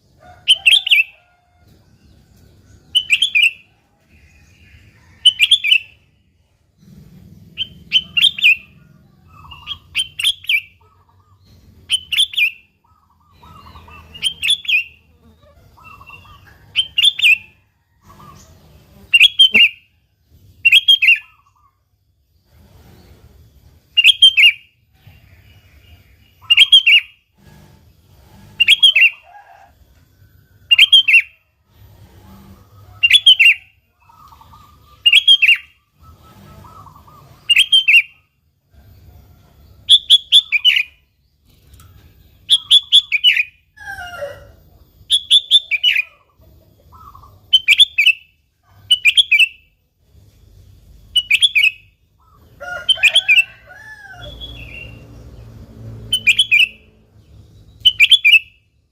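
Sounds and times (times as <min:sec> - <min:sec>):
bulbul calling: 0:07.5 - 0:15.0, 0:19.1 - 0:19.8, 0:57.8 - 0:58.6.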